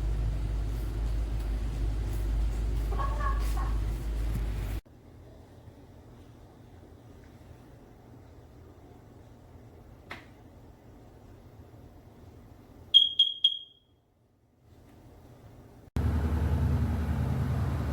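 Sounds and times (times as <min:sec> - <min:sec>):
steady low rumble: 0:00.0 - 0:04.8
shrill alarm beeps: 0:13.0 - 0:14.0.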